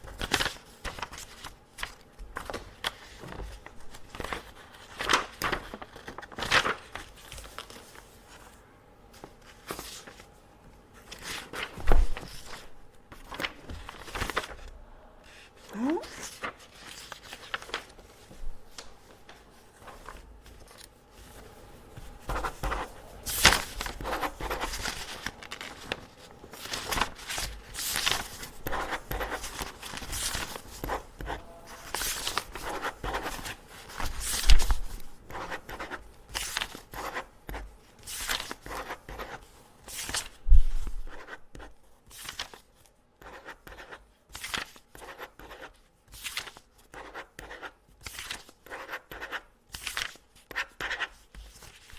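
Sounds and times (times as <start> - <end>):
paper sheets handled: 0.0 - 51.9
pen scratching on paper: 41.1 - 41.7.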